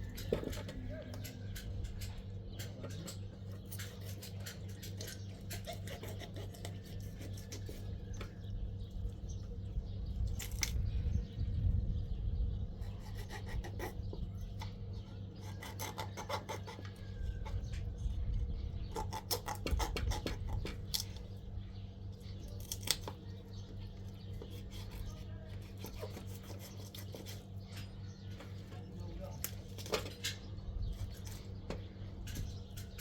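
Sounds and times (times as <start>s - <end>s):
tool clicking and scraping: 0.0s - 8.4s
steady low hum: 0.0s - 33.0s.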